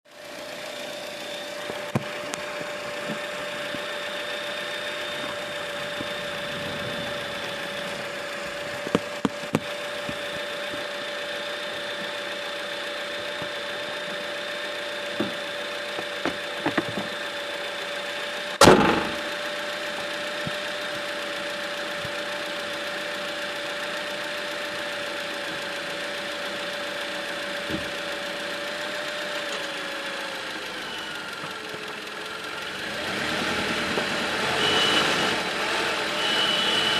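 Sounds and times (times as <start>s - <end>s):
loud sharp knock: 18.6s - 19.3s
high whistle from engine: 30.8s - 31.3s, 33.3s - 36.9s.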